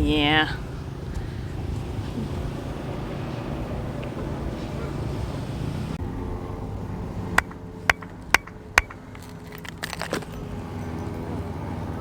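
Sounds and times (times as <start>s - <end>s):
sharp hand claps: 7.4s - 9.0s.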